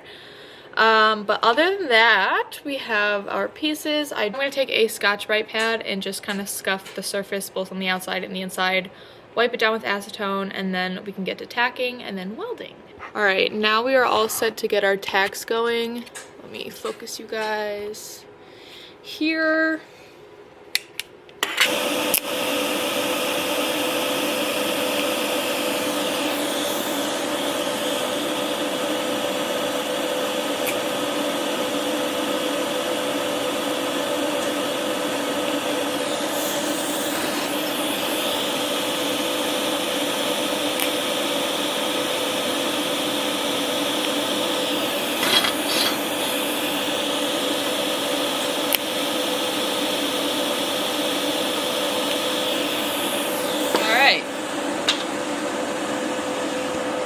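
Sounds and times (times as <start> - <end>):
welder hum and hiss: 21.5 - 57.0.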